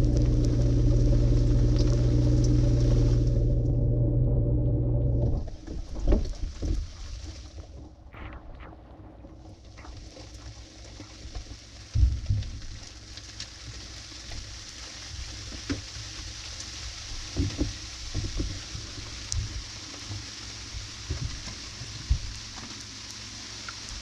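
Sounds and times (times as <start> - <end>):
low thumps and knocks: 8.2 - 10.4.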